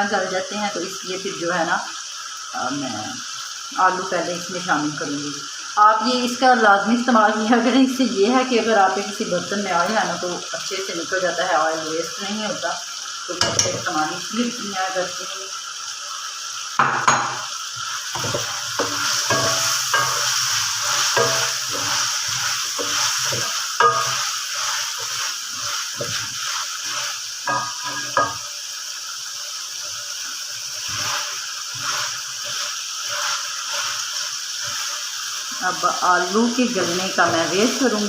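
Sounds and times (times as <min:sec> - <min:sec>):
food sizzling in hot oil: 0:00.0 - 0:38.0
spoon knocking and scraping pot: 0:13.4 - 0:13.9, 0:16.8 - 0:17.5, 0:18.2 - 0:26.3, 0:27.4 - 0:28.4.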